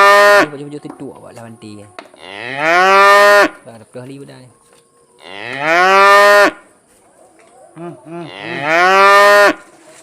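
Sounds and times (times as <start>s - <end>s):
cow mooing: 0.0s - 0.6s, 2.2s - 3.6s, 5.2s - 6.6s, 8.2s - 9.6s.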